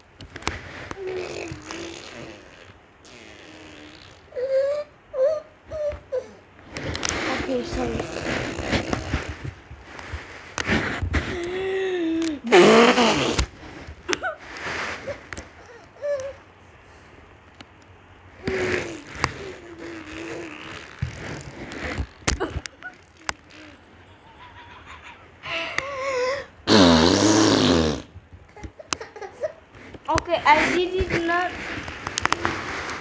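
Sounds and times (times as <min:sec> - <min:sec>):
child making vocal noises: 0:01.0 - 0:02.6, 0:18.5 - 0:20.9, 0:23.2 - 0:26.9
breathy falling vocal burst: 0:23.5 - 0:28.1.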